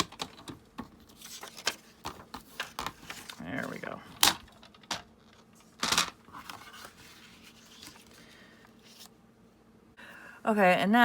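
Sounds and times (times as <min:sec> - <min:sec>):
faint handling noise: 0:00.8 - 0:09.2
paper sliding rustle: 0:01.1 - 0:04.0, 0:06.3 - 0:09.1.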